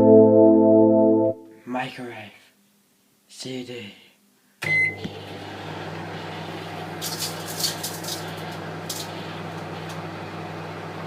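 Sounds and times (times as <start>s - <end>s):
microwave oven humming: 4.6s - 11.0s.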